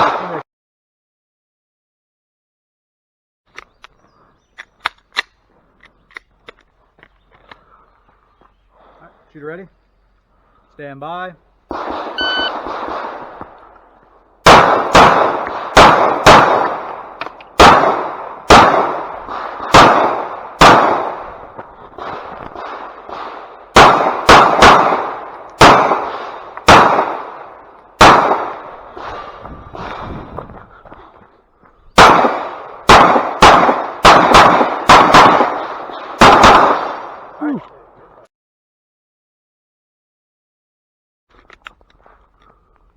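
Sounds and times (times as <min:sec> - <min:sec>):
pistol shots with echo: 0:00.0 - 0:00.4, 0:11.7 - 0:13.8, 0:14.4 - 0:30.1, 0:31.9 - 0:37.4
shot timer beep: 0:12.2 - 0:12.6.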